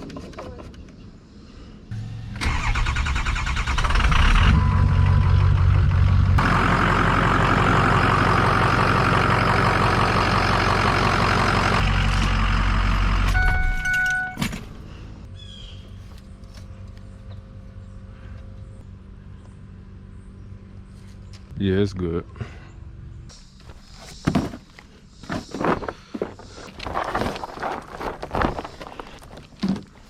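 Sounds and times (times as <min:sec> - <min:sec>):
diesel engine running: 0:01.9 - 0:15.3
short beeps: 0:13.3 - 0:14.4.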